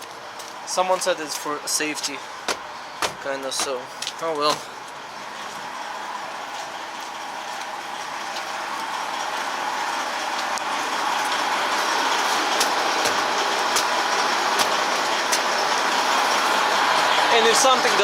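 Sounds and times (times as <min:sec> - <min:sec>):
heavy truck noise: 0:00.0 - 0:18.0.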